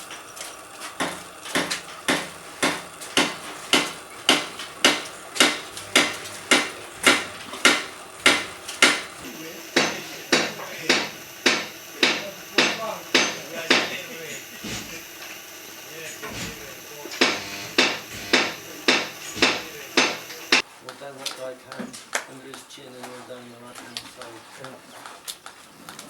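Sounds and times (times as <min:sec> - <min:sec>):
hammer blows on metal: 0:01.0 - 0:20.6.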